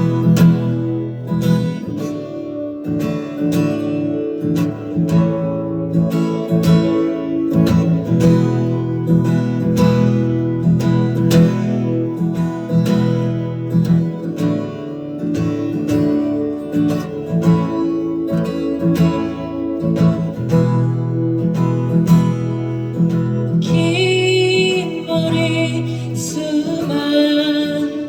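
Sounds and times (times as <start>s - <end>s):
acoustic guitar strumming: 0.0s - 28.0s
person singing: 23.6s - 28.0s.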